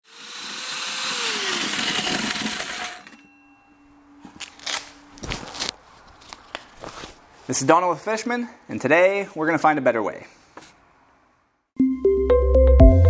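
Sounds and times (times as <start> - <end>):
power tool running: 0.0 - 3.2.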